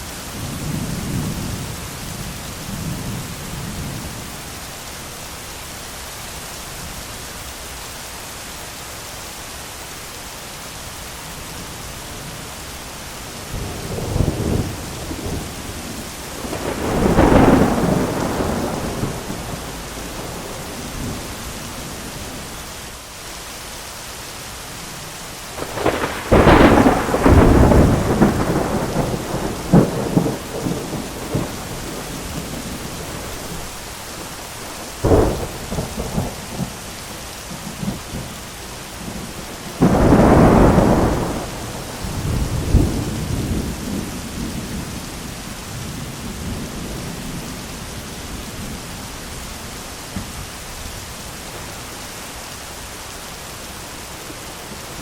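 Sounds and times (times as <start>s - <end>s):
steady rain: 0.0s - 55.0s
thunder rumbling and cracking: 13.5s - 22.5s, 25.6s - 36.9s, 39.0s - 47.8s.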